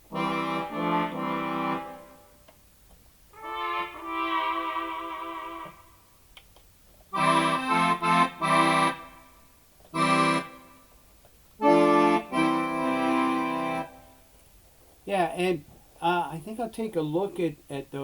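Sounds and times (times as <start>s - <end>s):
accordion chords: 0.0s - 2.4s, 3.3s - 6.0s, 7.1s - 11.0s, 11.6s - 14.2s.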